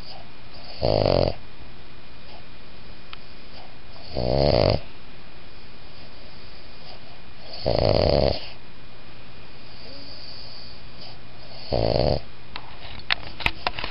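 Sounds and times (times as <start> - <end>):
dog snoring: 0.0 - 1.4, 3.5 - 4.9, 6.0 - 8.6, 9.6 - 12.3
faint breath hiss: 0.0 - 13.9.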